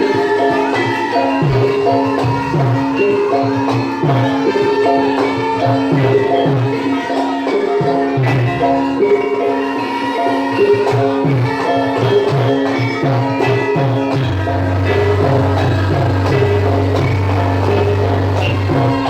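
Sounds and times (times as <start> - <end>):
drum beat: 13.3 - 19.0
steady held tone: 14.2 - 19.0
short melodic notes: 14.3 - 19.0.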